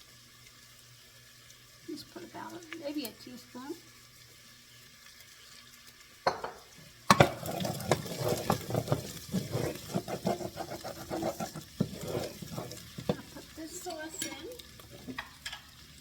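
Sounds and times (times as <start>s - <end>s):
spoon stirring and scraping pot: 6.3s - 15.7s.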